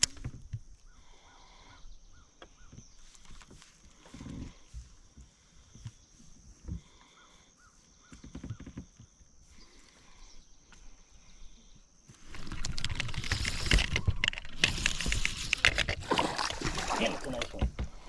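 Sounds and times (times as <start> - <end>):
water splashing and sloshing: 12.3 - 18.0.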